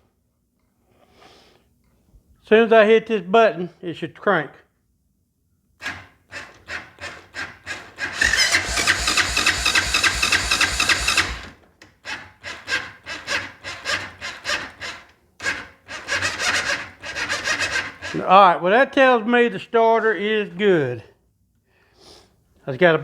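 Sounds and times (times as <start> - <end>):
electric starter cranking engine: 7.7 - 11.6, 15.4 - 18.1
short rhythmic pulses: 8.2 - 11.5.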